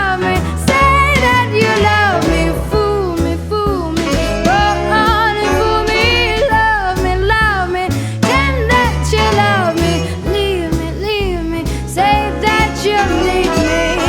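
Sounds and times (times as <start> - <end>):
song with sung melody and beat: 11.6 - 14.0.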